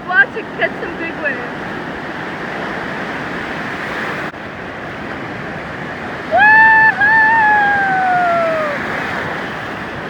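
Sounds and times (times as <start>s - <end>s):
ocean surf rushing: 0.0s - 10.0s
wind on microphone: 0.0s - 10.0s
loud high held call: 6.3s - 9.0s.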